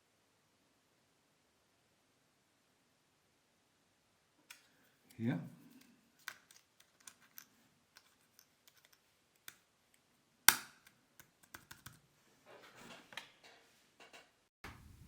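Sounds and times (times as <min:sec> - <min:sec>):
plastic keycap clicks and taps: 0:10.5 - 0:12.0.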